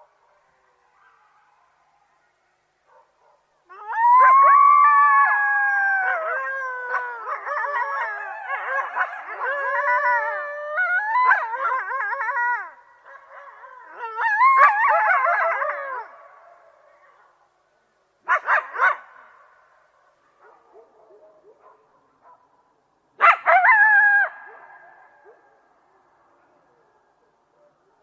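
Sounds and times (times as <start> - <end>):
coyotes howling and yipping: 3.0 - 17.4, 23.2 - 28.0.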